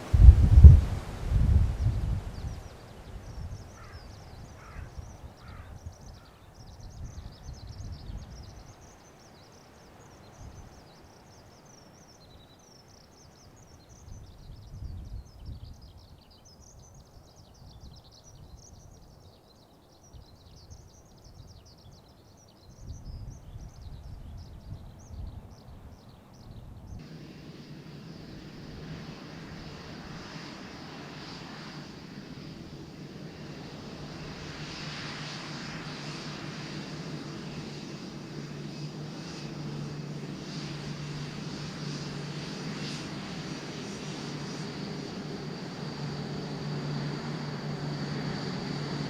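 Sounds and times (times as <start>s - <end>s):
wind rumble on microphone: 0.0s - 8.9s, 14.0s - 19.1s, 22.7s - 49.0s
lower falling bird calls: 1.7s - 12.3s
birds twittering: 1.8s - 49.0s.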